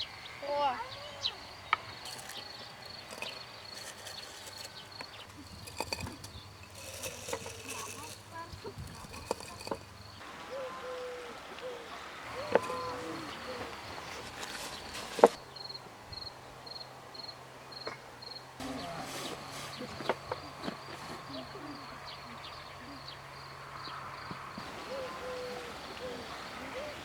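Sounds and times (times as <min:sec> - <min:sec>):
crickets trilling: 0:00.0 - 0:27.0
animal calls: 0:08.9 - 0:14.2, 0:24.6 - 0:27.0.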